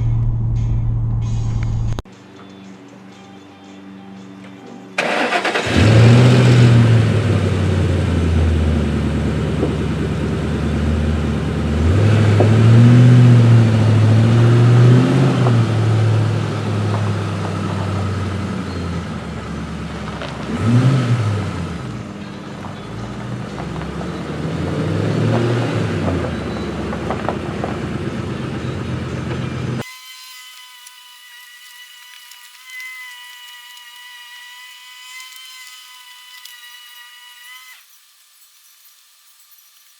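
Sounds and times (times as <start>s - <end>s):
car engine starting and revving: 5.0s - 22.3s, 23.0s - 29.8s.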